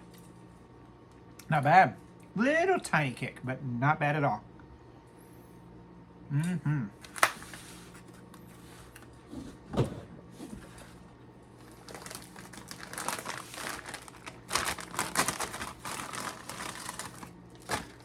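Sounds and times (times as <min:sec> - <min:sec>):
plastic bag crinkling: 0:10.7 - 0:18.0.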